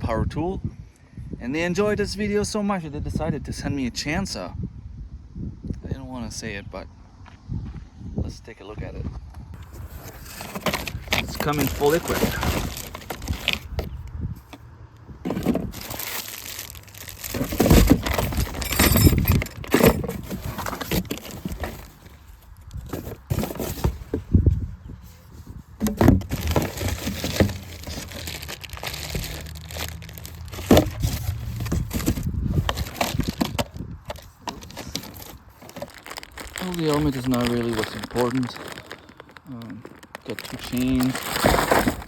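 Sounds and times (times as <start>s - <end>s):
packaging crinkling and rustling: 9.6s - 14.6s, 15.2s - 24.6s, 25.4s - 42.0s
knocks and clunks of parts: 15.2s - 16.2s, 17.3s - 22.1s, 25.8s - 28.4s, 30.3s - 35.9s.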